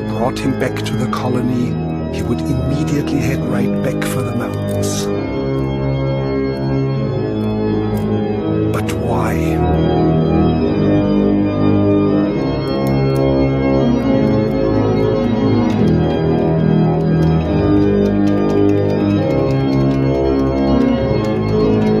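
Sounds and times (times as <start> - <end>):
organ playing held chords: 0.0 - 22.0.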